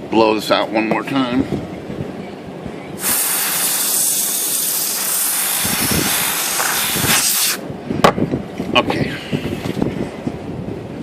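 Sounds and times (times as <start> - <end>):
compressed air hissing from nozzle: 3.0 - 7.6.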